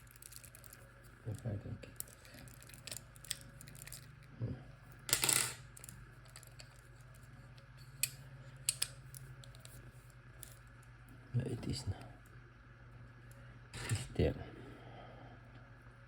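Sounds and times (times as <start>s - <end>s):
metallic scrape: 13.8s - 14.2s.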